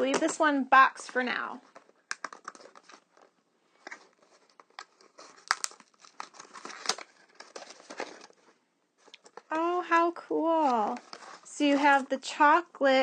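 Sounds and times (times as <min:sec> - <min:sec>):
cardboard packaging crinkling: 0:01.6 - 0:09.7, 0:10.4 - 0:12.1.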